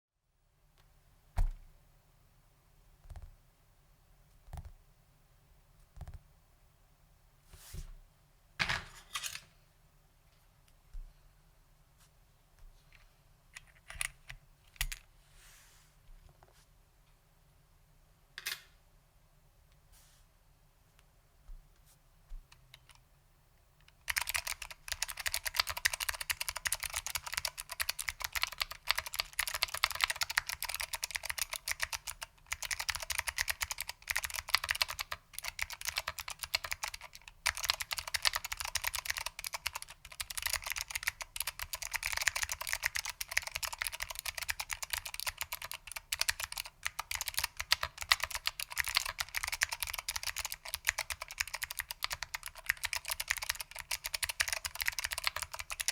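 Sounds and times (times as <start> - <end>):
fast clicky keyboard typing: 23.9 - 55.9.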